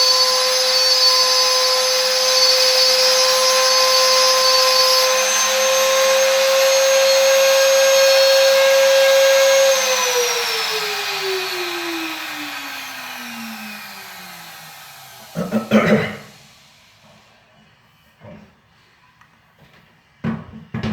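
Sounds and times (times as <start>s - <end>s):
sander winding down whine: 0.0s - 15.5s
orbital sander running: 0.0s - 16.8s.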